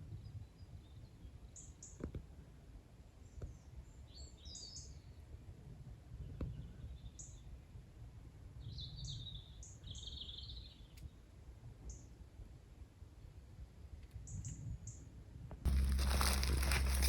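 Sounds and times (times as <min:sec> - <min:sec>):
songbirds chirping and trilling: 0:03.2 - 0:05.2
faint low rumble: 0:15.7 - 0:17.0.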